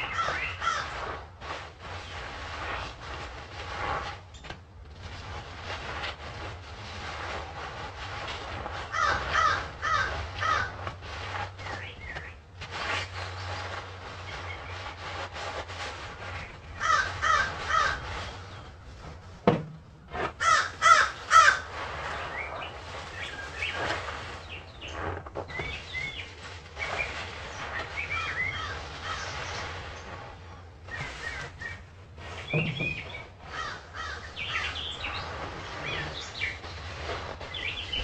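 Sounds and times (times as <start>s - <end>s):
birds calling harshly: 0.0s - 1.2s, 8.8s - 15.0s, 16.3s - 18.8s, 20.4s - 30.2s, 30.9s - 38.0s
bird chirps: 30.9s - 36.8s, 37.4s - 38.0s.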